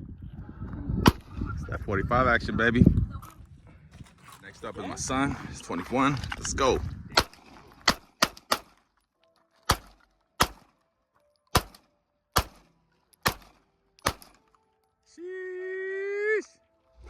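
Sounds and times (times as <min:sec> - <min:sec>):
handgun shots echoing: 0:07.2 - 0:08.8, 0:09.6 - 0:10.8, 0:11.4 - 0:14.6.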